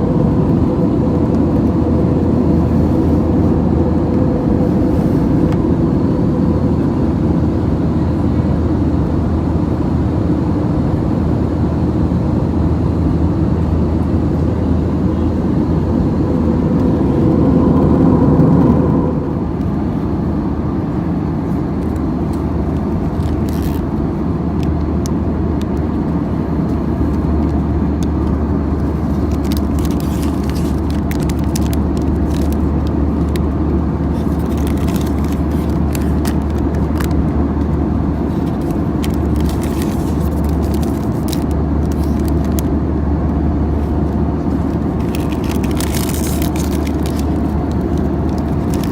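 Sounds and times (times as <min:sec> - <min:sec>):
airliner cabin engine rumble: 0:00.0 - 0:48.9
faint whine: 0:11.2 - 0:23.1.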